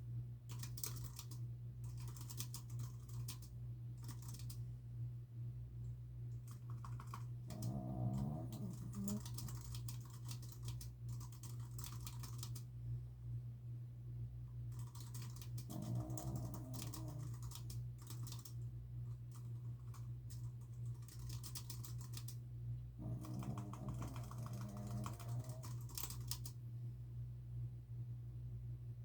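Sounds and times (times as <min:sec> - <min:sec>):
steady low hum: 0:00.0 - 0:29.0
fast typing on keyboard: 0:00.5 - 0:04.6, 0:06.5 - 0:12.6, 0:14.7 - 0:18.6, 0:19.3 - 0:22.3, 0:23.0 - 0:26.5
dog snoring: 0:07.0 - 0:09.9, 0:15.7 - 0:17.6, 0:23.0 - 0:26.4.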